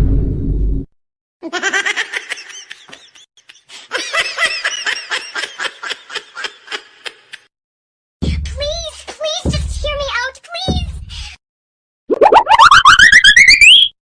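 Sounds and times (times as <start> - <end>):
high-pitched giggling laugh: 1.4 - 7.5.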